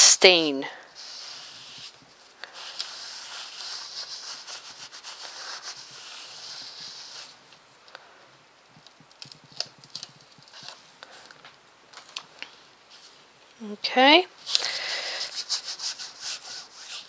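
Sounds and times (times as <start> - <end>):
scratchy rubbing on paper: 1.0 - 7.4, 15.1 - 17.0.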